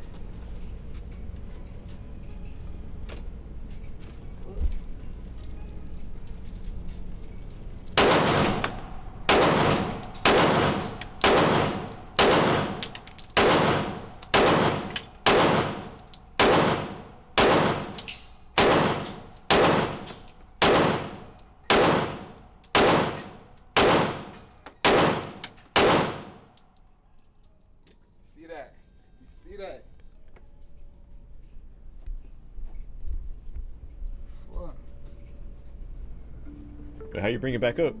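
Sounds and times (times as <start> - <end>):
handgun shots echoing: 8.0 - 26.6.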